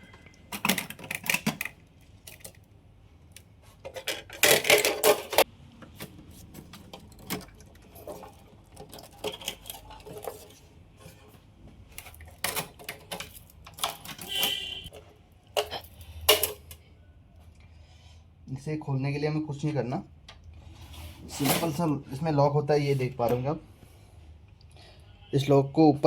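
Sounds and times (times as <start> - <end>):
metal clicks and clatter: 0.1 - 2.7, 3.8 - 10.6, 12.0 - 16.8.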